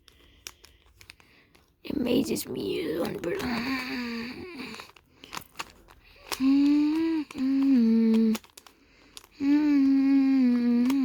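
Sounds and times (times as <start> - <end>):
person humming held notes: 6.3 - 8.4, 9.4 - 11.0.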